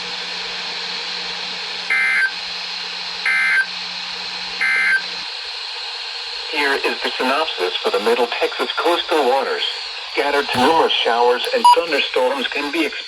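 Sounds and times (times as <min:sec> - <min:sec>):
radio receiver hiss: 0:06.6 - 0:13.0.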